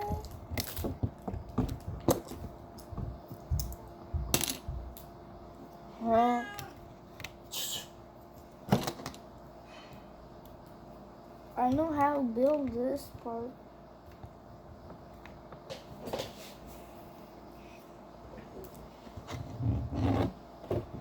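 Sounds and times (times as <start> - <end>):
cat meowing: 6.2 - 6.8.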